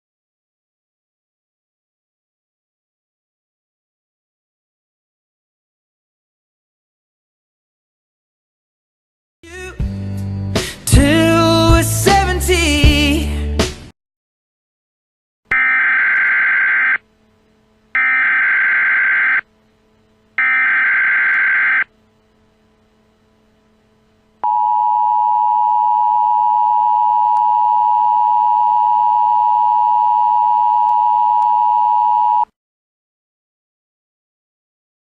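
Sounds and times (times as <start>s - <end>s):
data tone bursts: 15.5s - 17.0s, 18.0s - 19.4s, 20.4s - 21.9s.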